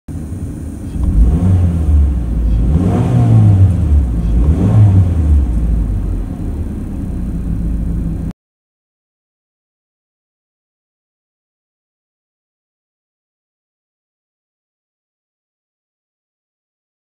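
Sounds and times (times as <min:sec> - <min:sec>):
car engine and road noise: 0:00.1 - 0:08.3.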